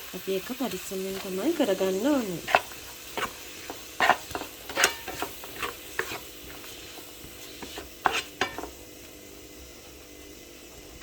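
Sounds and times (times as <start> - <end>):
hot oil sizzling: 0.0 - 11.0
spoon scraping a frying pan: 0.7 - 8.8.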